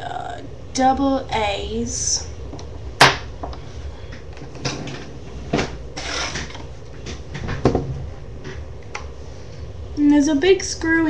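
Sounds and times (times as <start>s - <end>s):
scraping rustle: 4.5s - 7.3s.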